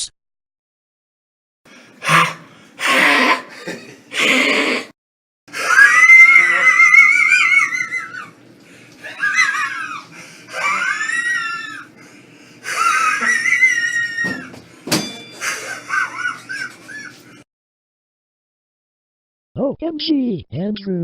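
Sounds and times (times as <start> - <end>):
wheezing laugh: 2.0 - 4.9, 5.5 - 8.3, 9.0 - 14.2, 15.4 - 17.4.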